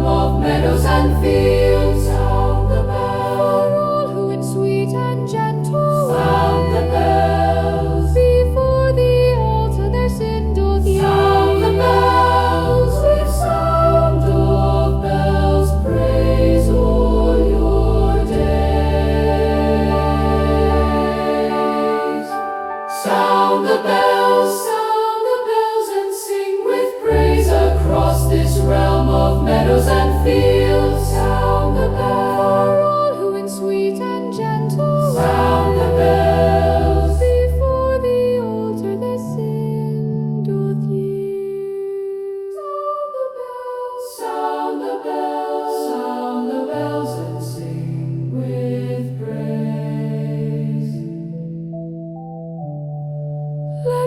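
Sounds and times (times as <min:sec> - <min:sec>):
choir singing a carol: 0:00.0 - 0:51.6.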